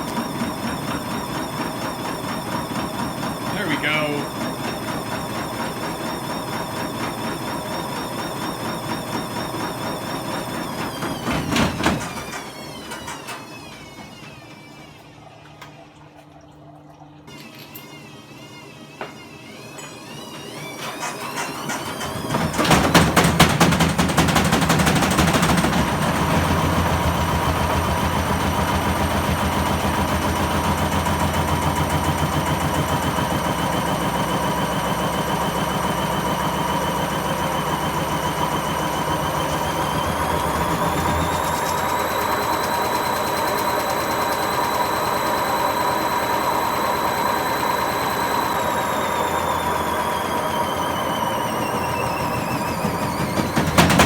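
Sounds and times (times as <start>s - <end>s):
washing machine spinning: 0.0s - 54.0s
motor whine: 17.3s - 22.6s, 26.2s - 54.0s
washing machine drum knocking: 22.1s - 36.8s, 52.8s - 54.0s.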